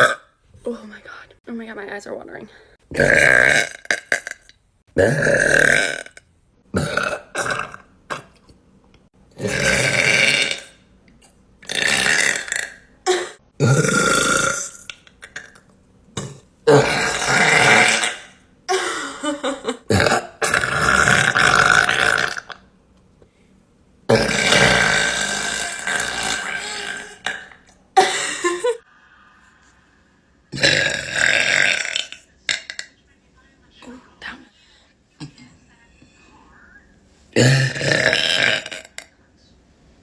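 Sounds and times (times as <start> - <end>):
woman burping loudly: 0.0 - 0.4, 2.9 - 8.4, 9.4 - 10.8, 11.6 - 15.6, 16.2 - 22.6, 24.1 - 28.8, 30.5 - 32.9, 37.4 - 39.1.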